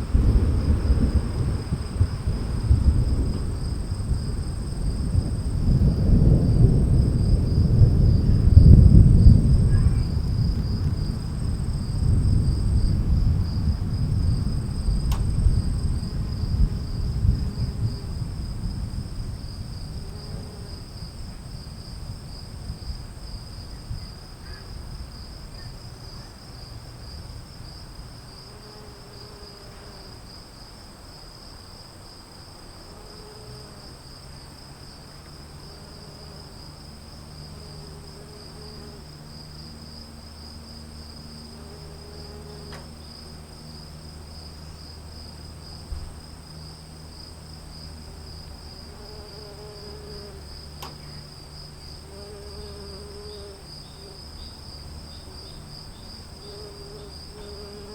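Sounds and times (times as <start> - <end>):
thunder rumbling: 0.0 - 26.2
crickets trilling: 0.0 - 57.9.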